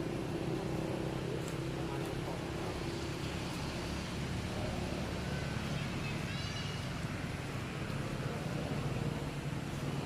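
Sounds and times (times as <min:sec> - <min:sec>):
noisy background: 0:00.0 - 0:10.0.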